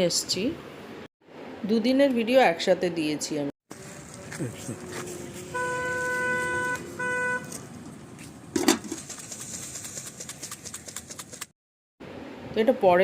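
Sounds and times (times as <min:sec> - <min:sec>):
vehicle horn honking: 0:05.3 - 0:07.6.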